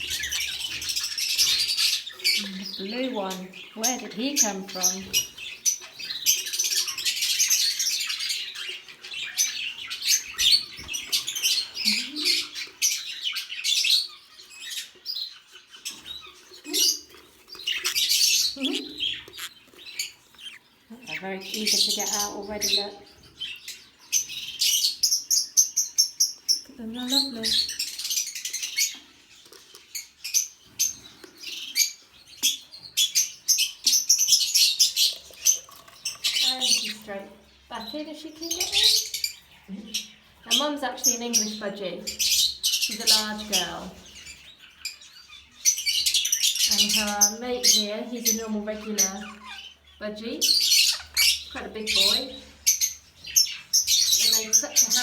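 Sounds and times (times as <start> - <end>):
budgerigars chirping and squawking: 0.0 - 55.0.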